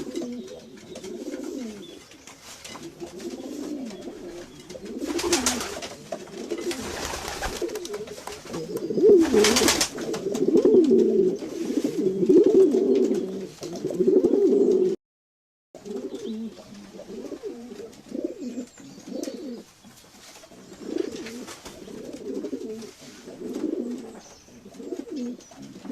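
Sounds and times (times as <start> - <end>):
pigeons cooing: 0.0 - 15.0, 15.8 - 19.7, 20.5 - 25.9.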